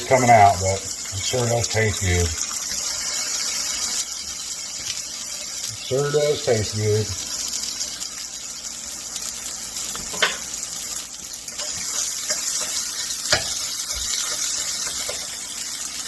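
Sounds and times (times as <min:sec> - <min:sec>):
food sizzling in frying pan: 0:00.0 - 0:16.0
utensil clicking against pan: 0:11.5 - 0:15.4.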